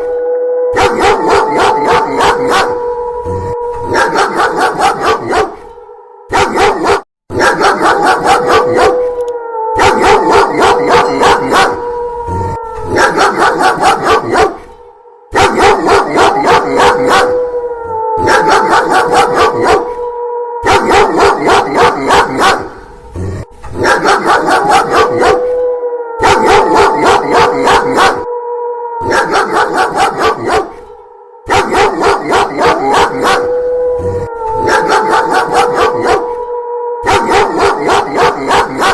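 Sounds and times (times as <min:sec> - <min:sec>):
wolf howling: 0:00.0 - 0:38.9
dog barking rapidly: 0:00.8 - 0:02.7, 0:03.9 - 0:05.6, 0:06.3 - 0:09.0, 0:12.9 - 0:14.6, 0:15.4 - 0:17.3, 0:18.2 - 0:19.8, 0:20.7 - 0:22.7, 0:23.8 - 0:25.4, 0:29.0 - 0:30.8, 0:31.5 - 0:33.5, 0:34.6 - 0:36.2, 0:37.1 - 0:38.9.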